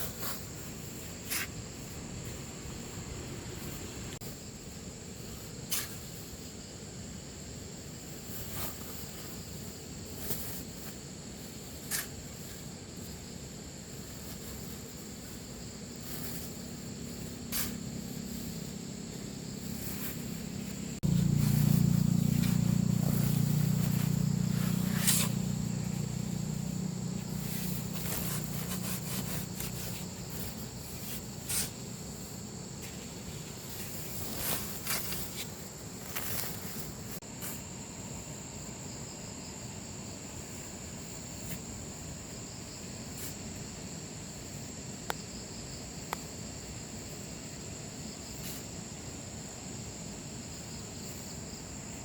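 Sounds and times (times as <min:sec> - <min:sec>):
insects calling: 0:00.0 - 0:52.0
low hum: 0:01.6 - 0:04.2, 0:16.9 - 0:37.2.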